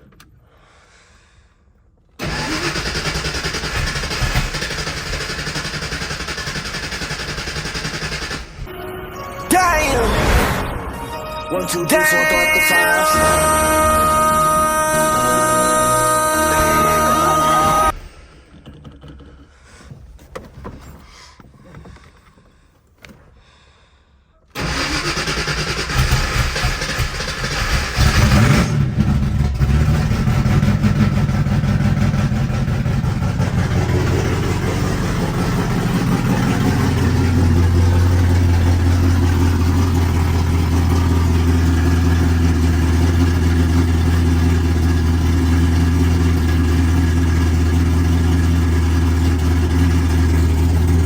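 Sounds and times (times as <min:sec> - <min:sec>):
car engine starting and running: 0:02.1 - 0:09.0, 0:12.0 - 0:19.2, 0:24.6 - 0:51.0
music: 0:08.7 - 0:17.9.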